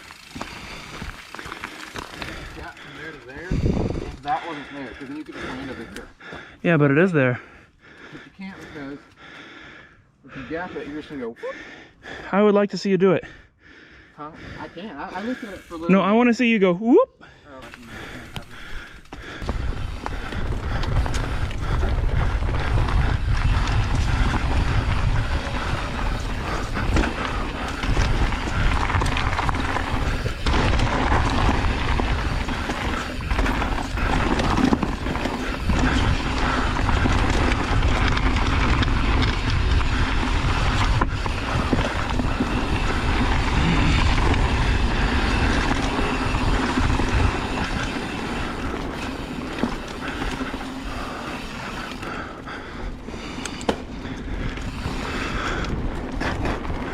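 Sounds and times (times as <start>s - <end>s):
bike rattling on dirt trail: 0.0s - 9.8s, 14.4s - 16.6s, 17.3s - 56.9s
wind buffeting microphone: 2.1s - 4.4s, 17.9s - 56.9s
deep steady rumble: 19.4s - 52.9s.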